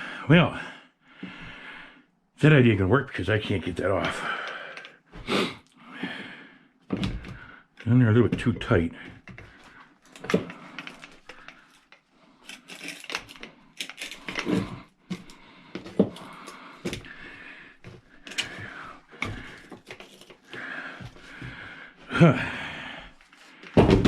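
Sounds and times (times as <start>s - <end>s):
hand tools clicking and scraping metal: 3.6s - 5.0s, 7.8s - 21.5s.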